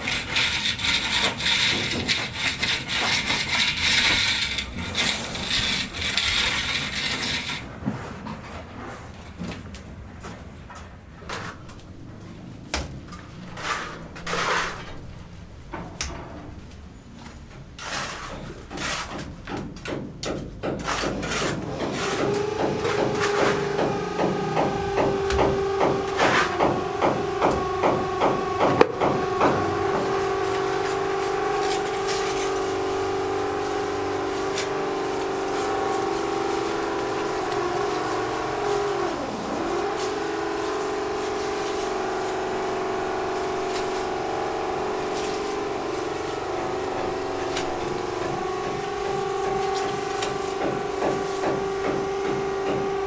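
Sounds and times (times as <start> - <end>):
power tool motor running: 21.7 - 53.0.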